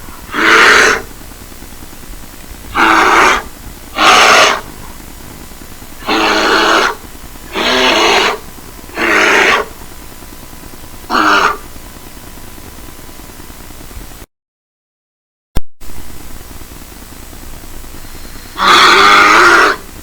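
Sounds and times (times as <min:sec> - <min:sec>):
bear growling: 0:00.1 - 0:01.1, 0:02.7 - 0:04.8, 0:06.0 - 0:09.8, 0:11.1 - 0:11.7, 0:18.5 - 0:19.9.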